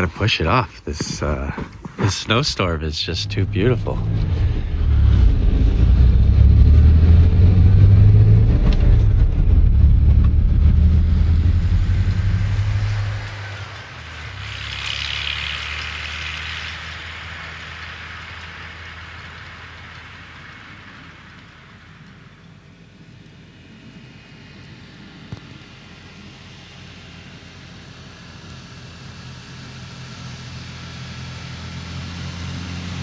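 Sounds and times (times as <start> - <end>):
vehicle engine rumbling: 0.0 - 33.0
hiss: 12.1 - 22.6.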